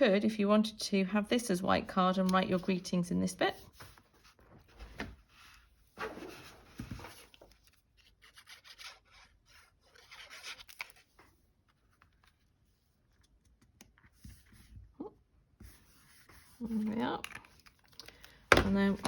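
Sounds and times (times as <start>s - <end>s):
paper rustling: 3.5s - 14.8s.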